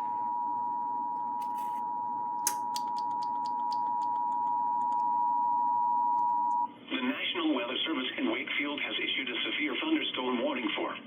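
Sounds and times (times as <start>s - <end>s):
steady warning alarm tone: 0.0s - 6.7s
sharp click: 2.4s - 4.1s.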